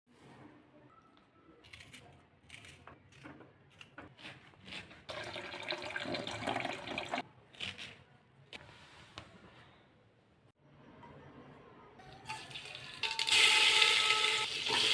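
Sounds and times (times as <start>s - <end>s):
water running from a tap: 5.1s - 7.2s.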